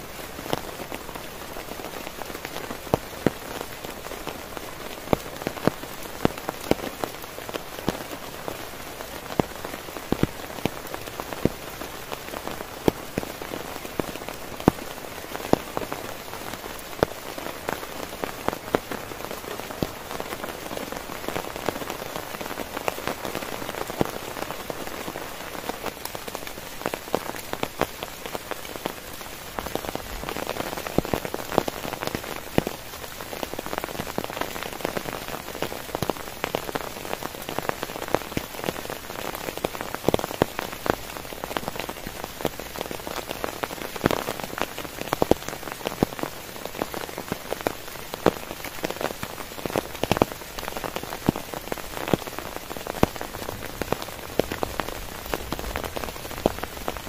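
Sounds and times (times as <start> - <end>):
heavy rain on a tent: 0.0 - 57.0.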